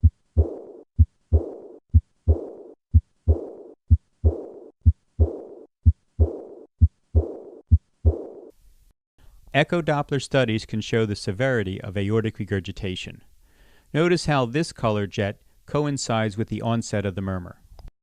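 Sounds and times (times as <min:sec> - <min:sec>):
blowing heart murmur: 0:00.0 - 0:08.3
heartbeat through stethoscope: 0:00.0 - 0:08.4.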